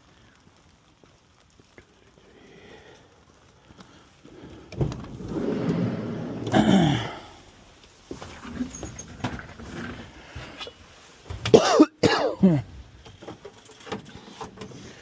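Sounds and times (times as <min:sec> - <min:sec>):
man coughing: 0:06.5 - 0:07.3, 0:11.5 - 0:12.7.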